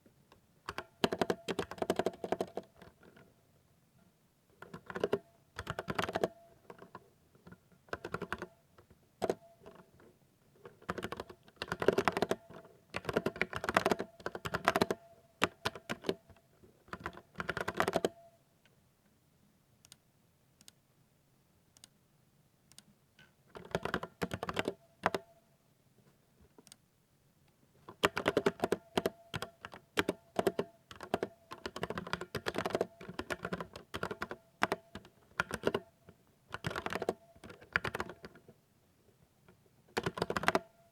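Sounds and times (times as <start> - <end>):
mechanical keyboard typing: 0.7 - 3.0, 4.6 - 6.9, 7.9 - 8.5, 10.8 - 16.3, 16.9 - 18.2, 23.5 - 25.3, 27.9 - 35.9, 36.5 - 38.4, 40.0 - 40.7.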